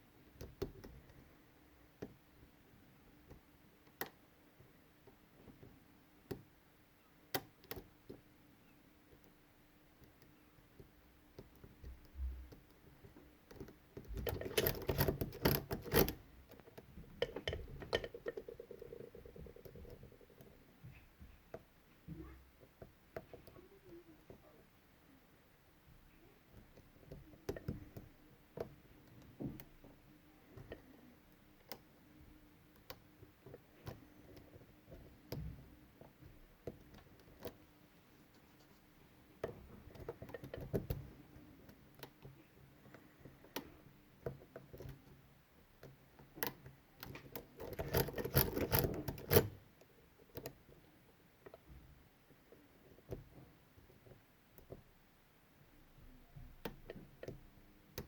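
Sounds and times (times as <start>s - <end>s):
lock pick clicking: 13.5s - 18.5s, 45.8s - 49.6s.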